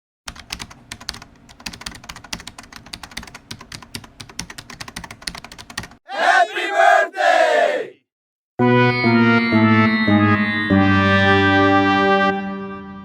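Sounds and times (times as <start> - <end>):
typing on a computer keyboard: 0.3 - 6.0.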